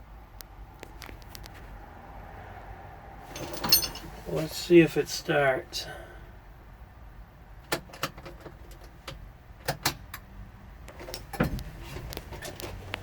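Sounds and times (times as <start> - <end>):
sharp clicks in tractor cab: 7.6 - 10.3.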